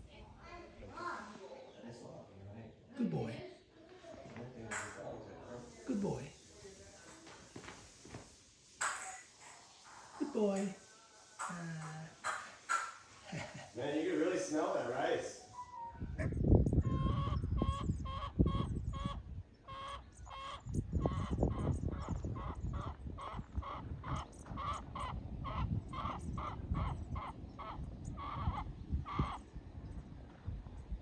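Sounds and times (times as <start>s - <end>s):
bird calling: 4.6s - 5.2s, 8.8s - 13.4s, 15.5s - 29.5s.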